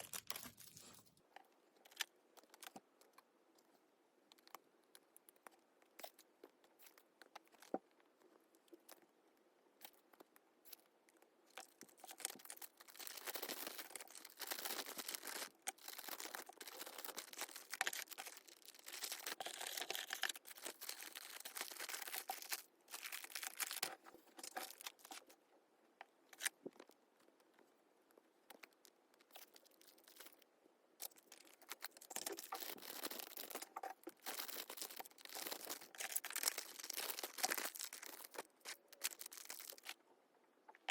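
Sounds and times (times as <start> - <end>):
plastic and paper crinkling: 0.0 - 1.2, 11.5 - 25.4, 28.6 - 30.4, 31.0 - 40.0.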